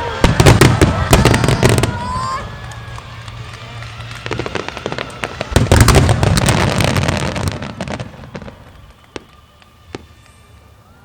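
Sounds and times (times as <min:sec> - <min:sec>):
firework bursts banging and crackling: 0:00.0 - 0:10.9
lone firework bangs: 0:04.0 - 0:10.2.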